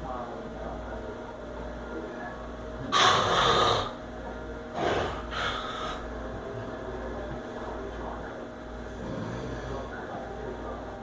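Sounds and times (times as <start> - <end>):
person snoring loudly: 2.9 - 4.0, 4.8 - 6.0, 8.9 - 9.9.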